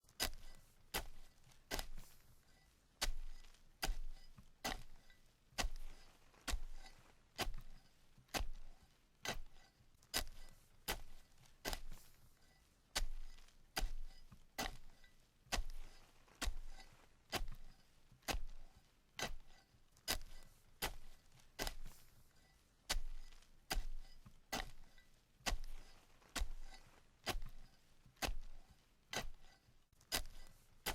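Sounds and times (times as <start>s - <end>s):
shovel stabbing into dirt: 3.0s - 4.9s, 9.2s - 9.5s, 19.2s - 19.5s, 20.1s - 22.0s, 22.9s - 27.6s, 28.2s - 30.9s.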